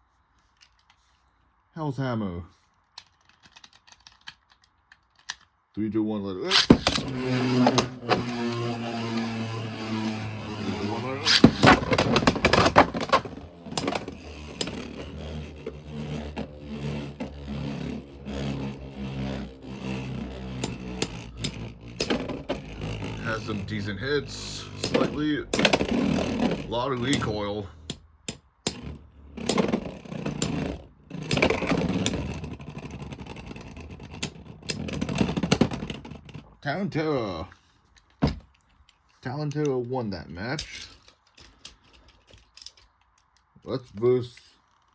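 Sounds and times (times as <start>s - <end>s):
spinning tops whirring: 6.5s - 36.4s.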